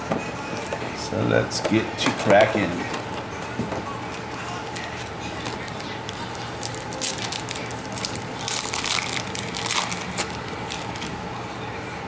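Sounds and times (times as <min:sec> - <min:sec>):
wrapper tearing and crinkling: 0:04.4 - 0:11.1.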